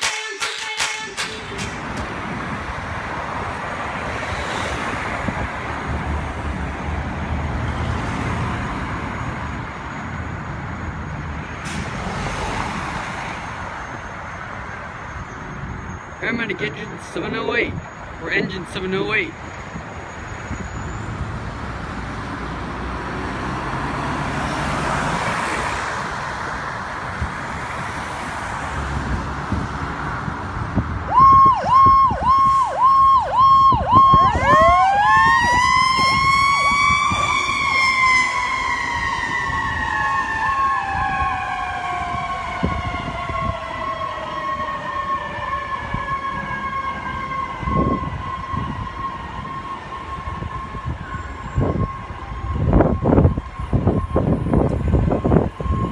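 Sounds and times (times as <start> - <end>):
vehicle noise rushing: 0.0 - 55.9
electronic siren yelping: 31.1 - 55.9
mechanical siren wailing: 31.1 - 55.9.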